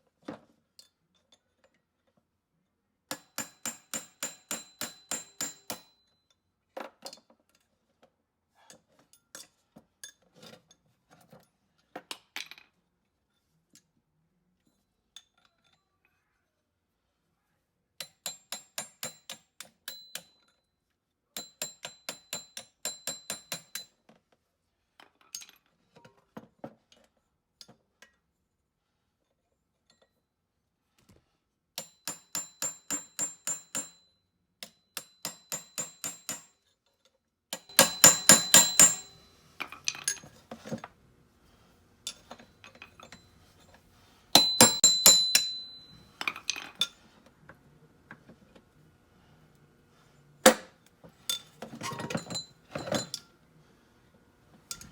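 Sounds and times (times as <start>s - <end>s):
mallet tapping on metal: 37.6s - 39.3s, 44.4s - 46.0s.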